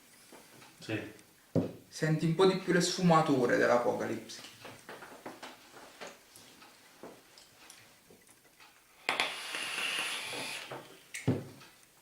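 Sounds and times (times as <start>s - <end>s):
air hissing through e-cigarette: 9.0s - 10.8s.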